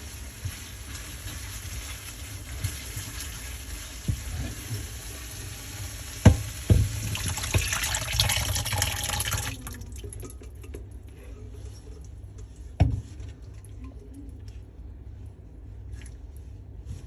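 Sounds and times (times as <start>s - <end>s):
water running from a tap: 0.0s - 10.4s.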